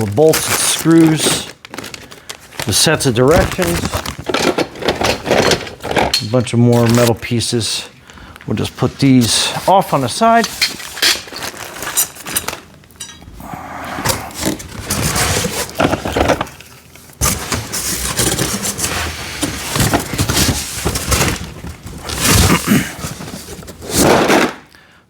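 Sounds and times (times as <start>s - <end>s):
cardboard packaging rustling: 0.0s - 6.0s, 14.0s - 24.5s.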